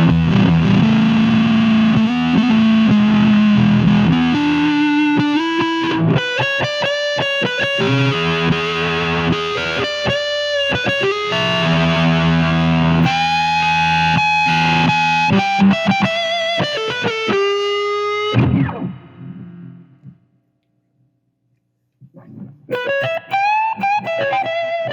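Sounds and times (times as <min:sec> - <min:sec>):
distorted electric guitar lead: 0:00.0 - 0:20.2, 0:22.1 - 0:24.9.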